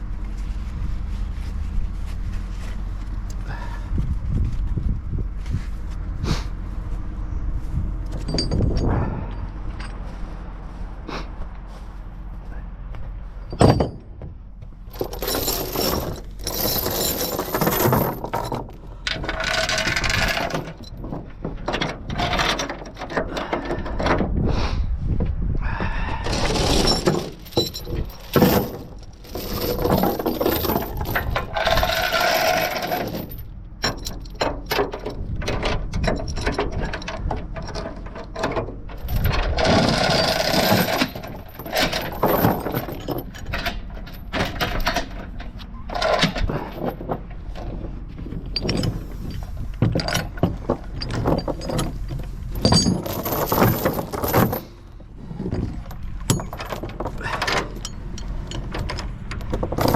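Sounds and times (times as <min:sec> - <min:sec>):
machinery clanking and rattling: 0:08.0 - 0:10.2, 0:13.4 - 0:24.4, 0:26.1 - 0:59.9.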